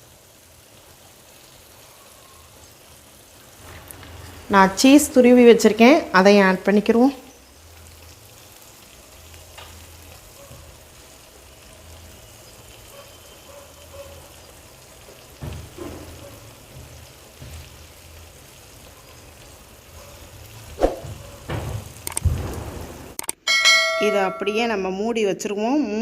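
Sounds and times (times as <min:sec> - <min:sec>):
food sizzling in a frying pan: 0:00.0 - 0:23.2
sharp metallic clank: 0:23.3 - 0:24.8.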